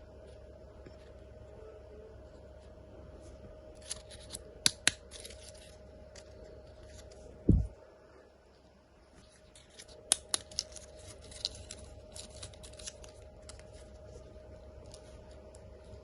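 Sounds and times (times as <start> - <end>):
steady low hum: 0.0 - 16.0
toy cars and packaging handling: 3.8 - 7.3, 9.2 - 16.0.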